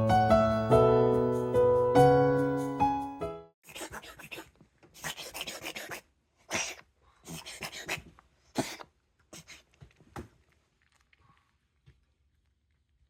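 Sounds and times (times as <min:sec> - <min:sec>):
cat reverse sneezing: 0:03.7 - 0:09.7.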